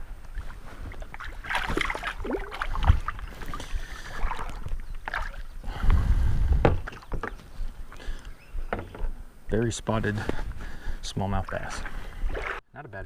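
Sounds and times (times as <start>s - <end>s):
water splashes: 0.0s - 5.7s, 11.2s - 12.6s
knocks on kayak: 6.6s - 7.4s.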